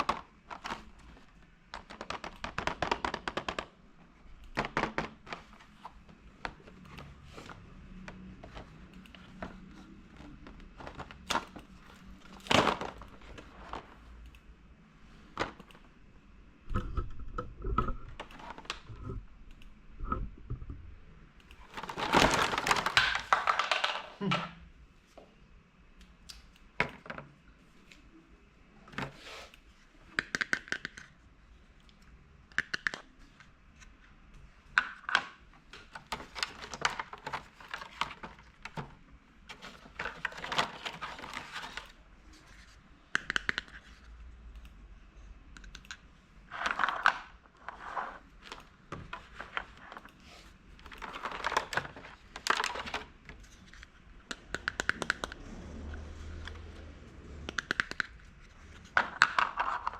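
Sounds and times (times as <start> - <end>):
rustling and scraping: 46.5 - 53.9
plastic toy pieces clicking: 54.3 - 55.4.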